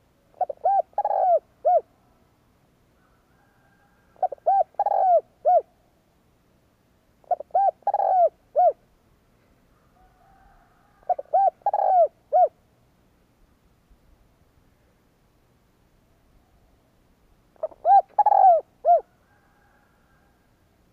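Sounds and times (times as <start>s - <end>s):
dove cooing: 0.3s - 2.2s, 3.0s - 5.8s, 7.2s - 8.8s, 9.8s - 12.6s, 17.6s - 20.4s.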